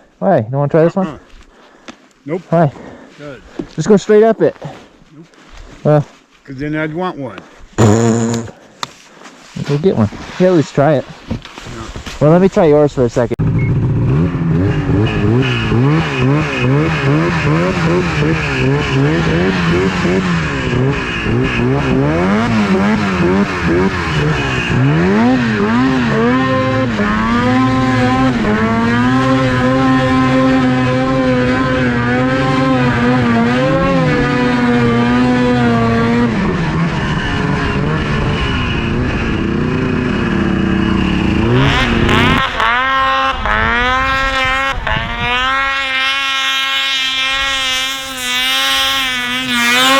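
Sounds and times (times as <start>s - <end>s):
snowmobile engine revving: 7.8s - 8.6s, 11.8s - 49.9s.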